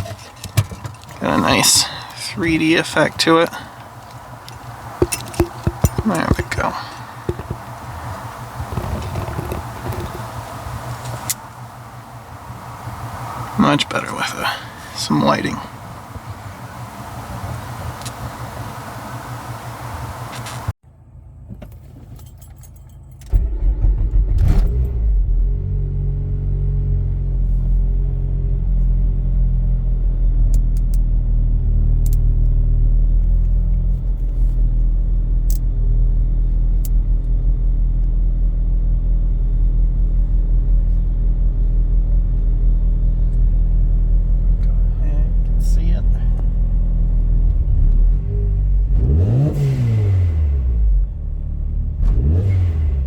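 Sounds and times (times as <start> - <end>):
car engine starting and idling: 0.0 - 53.0
faint clicks: 17.8 - 18.3.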